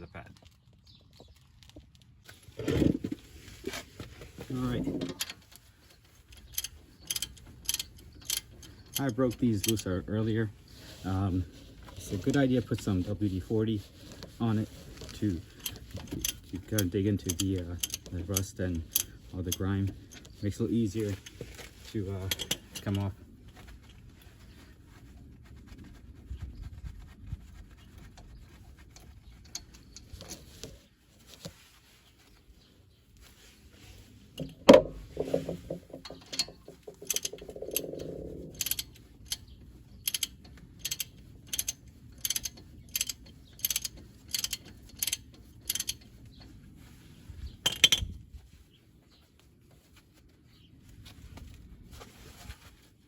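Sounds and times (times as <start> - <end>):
socket ratchet clicking: 36.0 - 39.4, 40.1 - 46.0.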